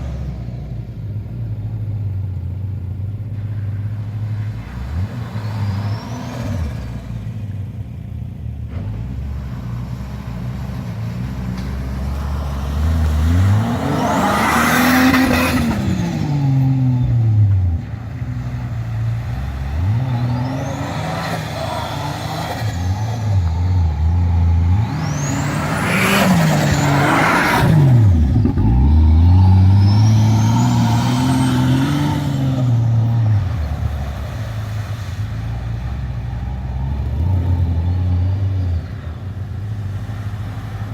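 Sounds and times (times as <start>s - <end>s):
engine revving: 11.2s - 39.2s.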